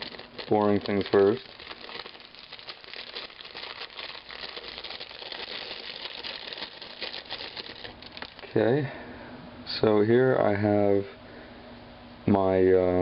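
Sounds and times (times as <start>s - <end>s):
plastic packaging crinkling: 0.0s - 8.5s.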